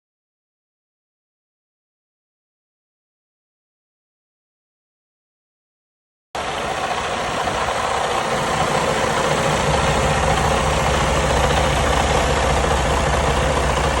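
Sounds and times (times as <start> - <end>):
diesel engine idling: 6.4 - 14.0.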